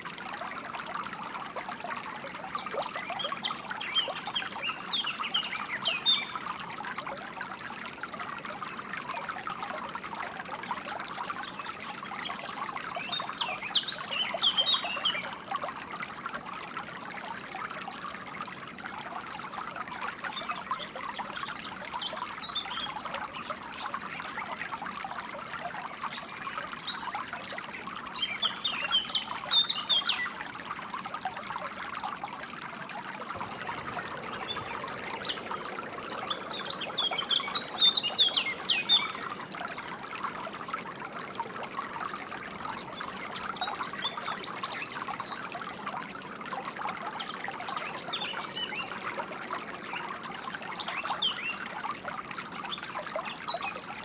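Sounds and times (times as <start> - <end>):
stream water flowing: 0.0 - 54.0
songbirds chirping: 11.1 - 15.4, 33.0 - 40.0.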